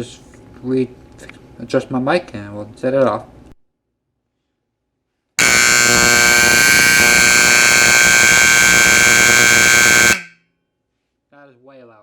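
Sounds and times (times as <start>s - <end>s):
vibrating horn buzzing: 5.4s - 10.4s.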